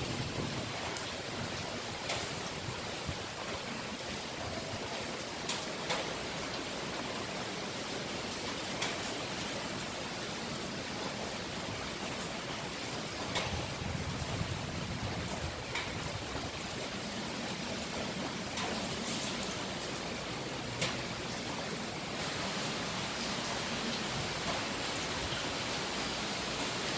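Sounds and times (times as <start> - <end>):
wind roaring: 0.0 - 5.0, 13.1 - 18.4.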